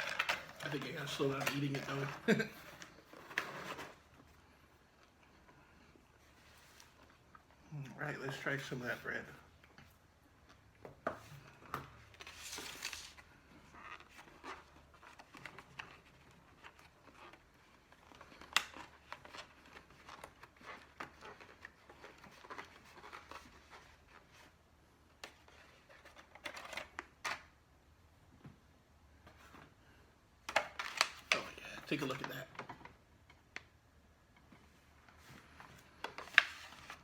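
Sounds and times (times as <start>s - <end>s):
packaging clicks and scrapes: 0.0s - 4.1s
food packaging rustling: 12.1s - 24.5s.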